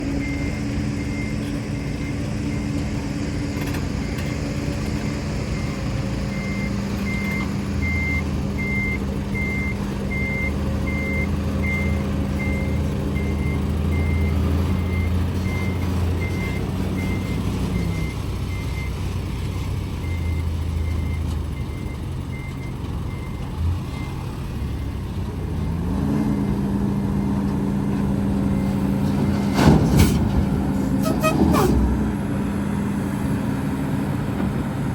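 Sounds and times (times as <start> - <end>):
reversing alarm beeping: 0.0 - 2.9, 5.5 - 19.0
heavy diesel engines running: 0.0 - 34.9.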